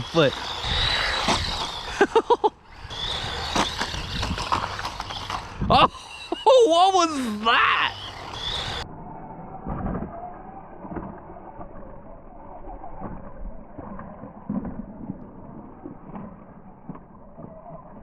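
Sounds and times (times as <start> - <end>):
toy truck electric motor whine: 0.0 - 6.5, 7.2 - 10.6.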